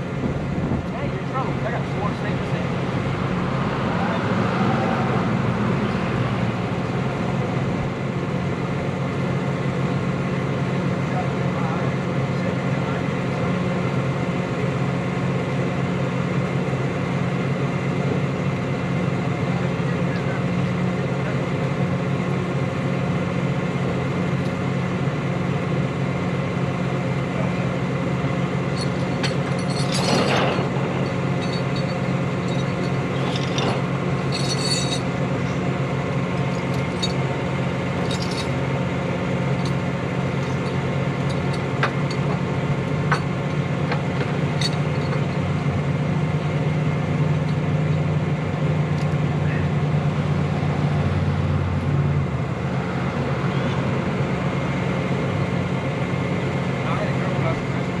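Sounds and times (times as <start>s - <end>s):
truck engine droning: 0.0s - 58.0s
clinks and rattles: 28.7s - 35.6s, 36.3s - 38.6s, 39.6s - 45.5s.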